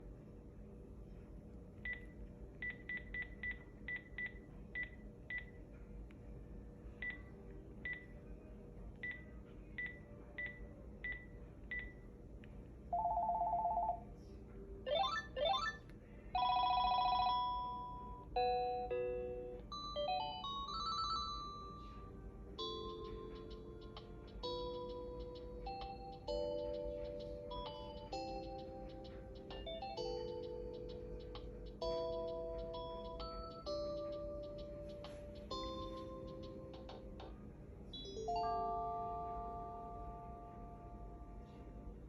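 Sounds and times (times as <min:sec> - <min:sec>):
phone ringtones: 0:13.0 - 0:14.0, 0:16.4 - 0:21.9.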